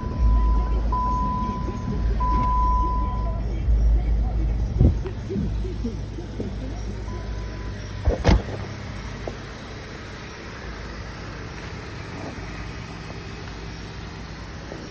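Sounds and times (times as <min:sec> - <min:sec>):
car engine idling: 0:00.0 - 0:14.9
loud sharp thumps: 0:08.0 - 0:09.5.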